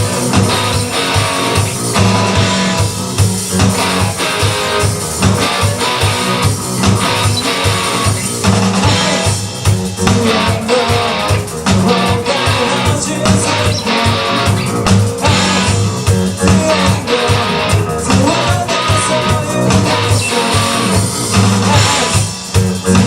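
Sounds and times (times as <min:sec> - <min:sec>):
drums: 0:00.0 - 0:23.0
pulsing bass line: 0:00.0 - 0:23.0
strummed electric guitars: 0:00.0 - 0:23.0.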